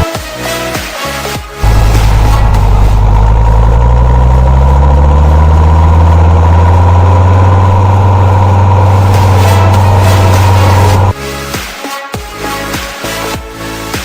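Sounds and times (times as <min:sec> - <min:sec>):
tractor diesel engine running: 0:01.6 - 0:11.2.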